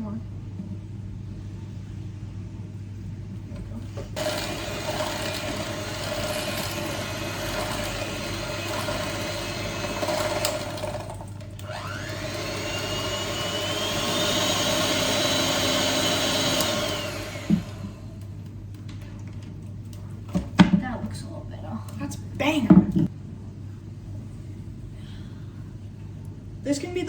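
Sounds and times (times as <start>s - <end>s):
electric mixer whirring: 4.1s - 18.4s.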